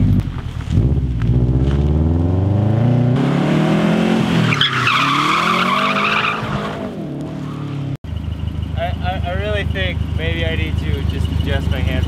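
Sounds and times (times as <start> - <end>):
car engine revving: 0.0 - 12.0
tyres squealing: 4.3 - 6.8.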